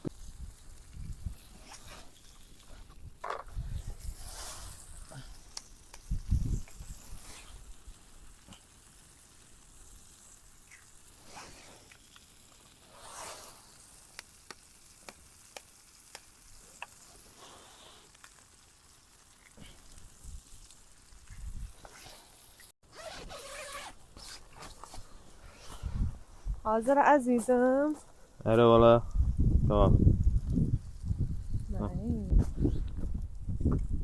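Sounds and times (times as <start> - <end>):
food sizzling in a pan: 0.0 - 22.7
small sharp pops: 5.4 - 7.5, 10.6 - 17.1.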